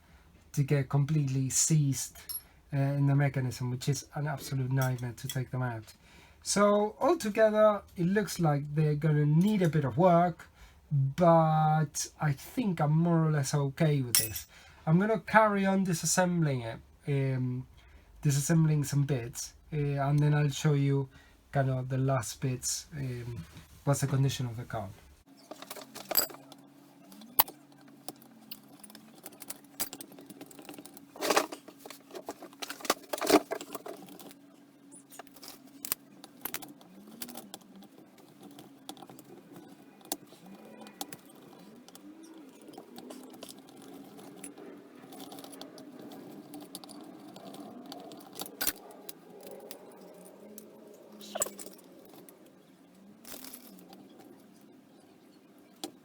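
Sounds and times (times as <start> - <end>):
small metal parts clinking: 2.1 - 2.5, 14.1 - 14.6, 25.3 - 54.5.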